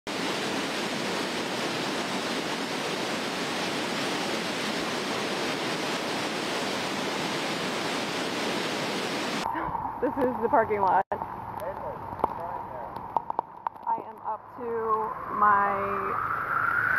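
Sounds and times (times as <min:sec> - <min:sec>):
floodwater rushing: 0:00.1 - 0:11.0.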